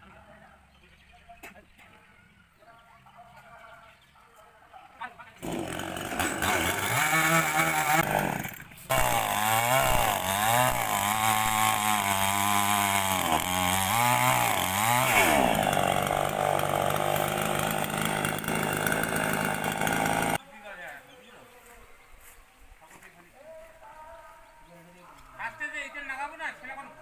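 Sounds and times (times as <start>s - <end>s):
chainsaw cutting into wood: 5.4s - 20.4s.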